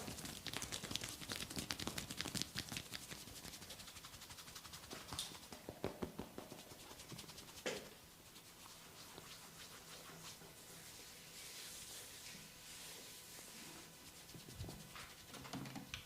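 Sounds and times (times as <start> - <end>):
hands slapping on skin: 0.0 - 7.8.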